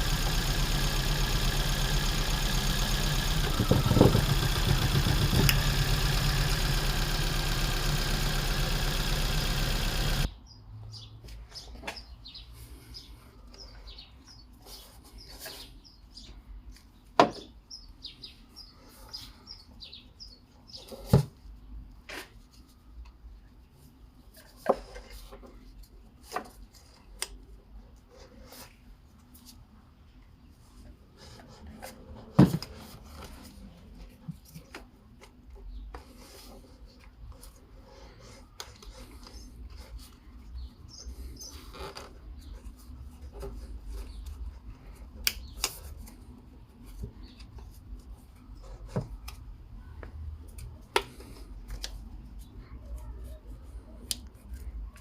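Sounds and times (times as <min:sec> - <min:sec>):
car engine idling: 0:00.0 - 0:10.3.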